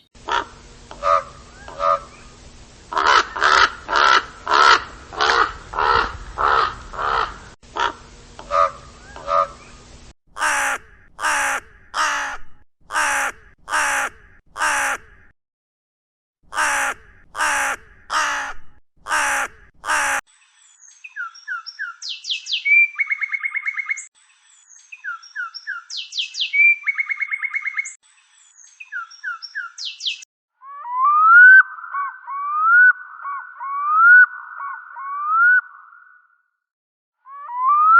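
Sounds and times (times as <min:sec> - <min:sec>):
harsh repeated bird calls: 0:00.0 - 0:15.3, 0:16.5 - 0:20.2, 0:24.7 - 0:36.4
small bird whistles and trills: 0:20.7 - 0:35.7.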